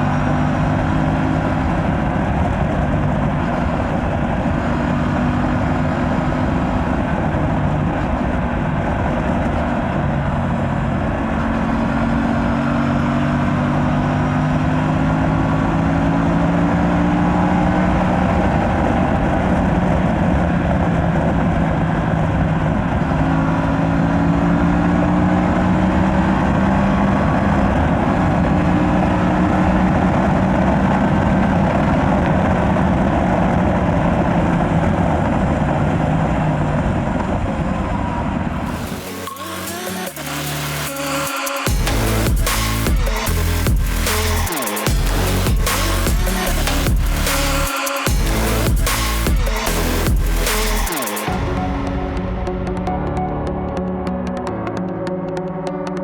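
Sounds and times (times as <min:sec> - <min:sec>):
rushing noise: 0:36.7 - 0:56.0.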